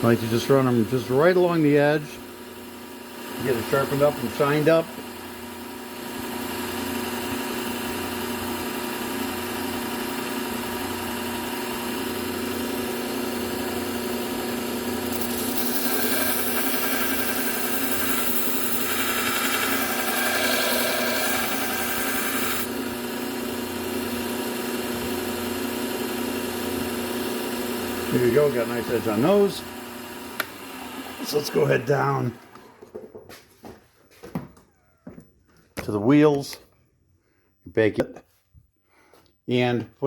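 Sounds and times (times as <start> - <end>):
belt sander humming: 3.2 - 6.4, 7.0 - 33.4
blade grinding on belt: 14.5 - 22.8, 27.8 - 32.7.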